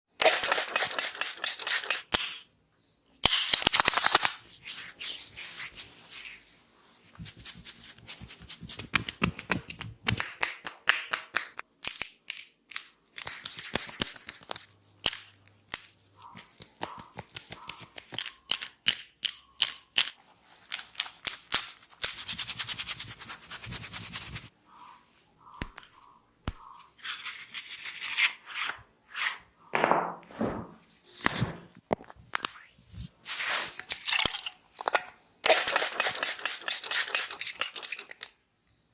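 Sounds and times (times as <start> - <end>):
sharp snaps and taps: 8.8 - 22.2, 25.6 - 26.8.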